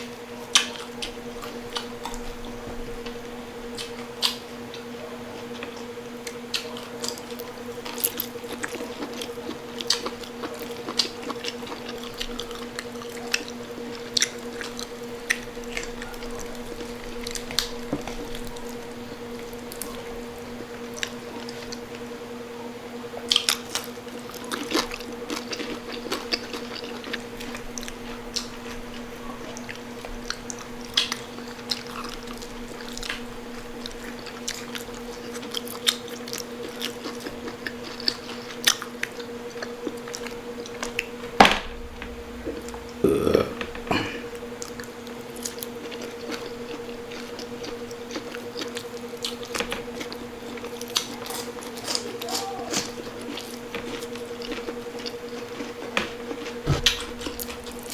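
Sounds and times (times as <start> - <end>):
crunchy bites and wet chewing: 5.6 - 18.8, 23.2 - 41.2, 42.5 - 57.9
low hum: 40.2 - 45.9.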